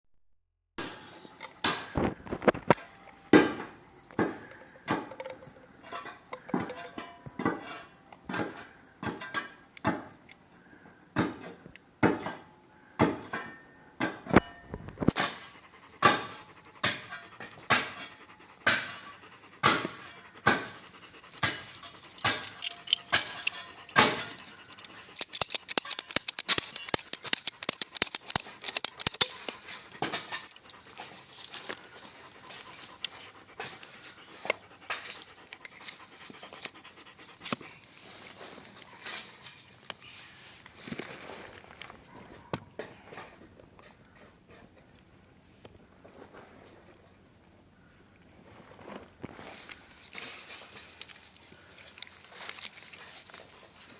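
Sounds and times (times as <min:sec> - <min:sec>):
hard objects clicking and knocking: 0:00.8 - 0:02.8, 0:14.4 - 0:37.8.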